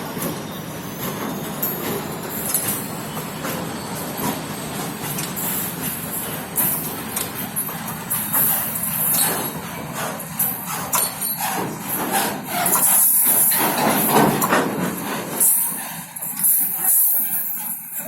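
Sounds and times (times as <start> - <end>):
freight train rushing: 0.0 - 18.0
rattling and clanking knocks: 13.3 - 15.4.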